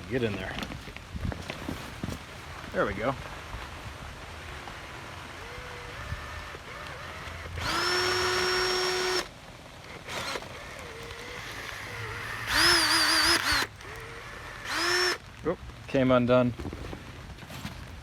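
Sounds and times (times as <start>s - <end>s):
small electric motor whining: 4.5s - 15.2s.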